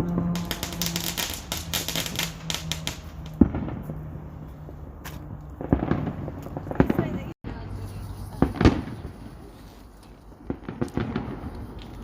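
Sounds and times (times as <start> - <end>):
fireworks crackling and popping: 0.0 - 12.0
firework bang: 0.2 - 4.2, 5.6 - 7.3, 10.5 - 11.8.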